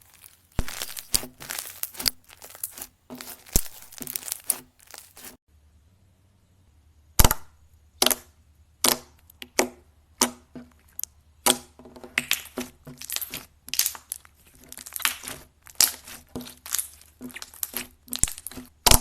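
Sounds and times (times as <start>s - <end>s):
slime popping and crackling: 0.0s - 5.4s, 12.2s - 19.0s.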